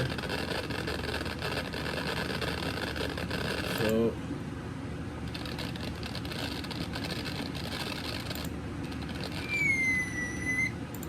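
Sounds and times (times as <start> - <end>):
firework whistle: 9.4 - 10.8.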